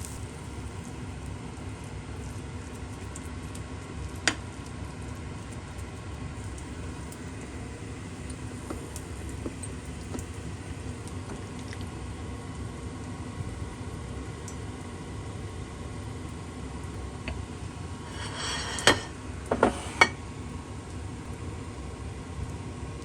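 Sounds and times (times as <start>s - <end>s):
faint crackles: 0.0s - 0.3s
food sizzling in frying pan: 0.0s - 1.0s, 16.9s - 21.2s.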